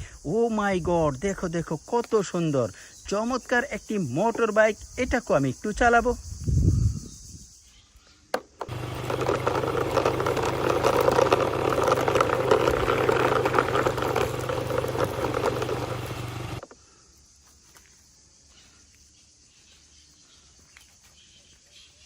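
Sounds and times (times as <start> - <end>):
toy motorbike engine sound: 8.6 - 16.6.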